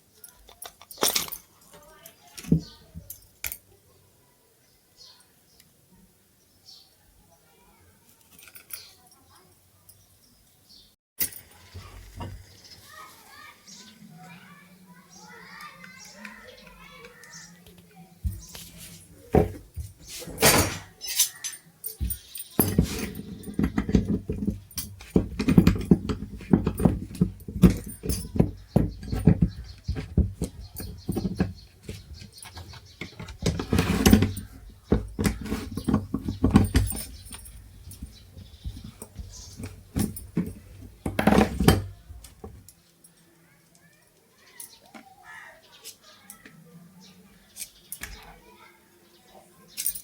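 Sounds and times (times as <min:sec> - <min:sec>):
metal parts and tools clinking: 0:00.2 - 0:03.6, 0:08.2 - 0:10.0, 0:11.2 - 0:12.4, 0:18.2 - 0:43.3, 0:49.7 - 0:50.0.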